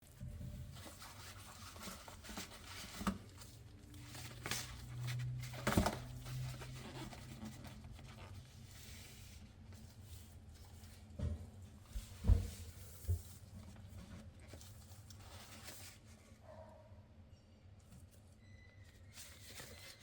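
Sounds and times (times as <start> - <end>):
wrapper rustling and crinkling: 0.7 - 11.1, 12.0 - 16.4, 19.0 - 20.0.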